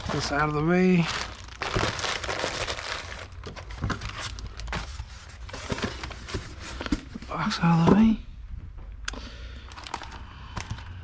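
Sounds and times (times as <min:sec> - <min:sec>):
cardboard and packing rustling: 0:00.0 - 0:08.2, 0:09.7 - 0:11.0.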